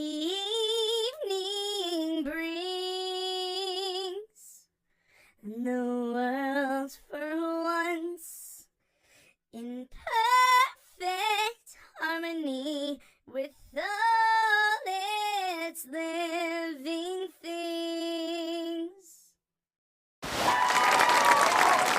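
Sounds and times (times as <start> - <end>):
high voice singing unaccompanied: 0.0 - 4.6, 9.6 - 19.2.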